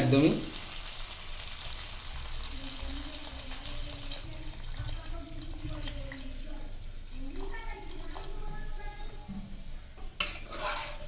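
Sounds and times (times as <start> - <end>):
water pouring into a pan: 0.0 - 8.5.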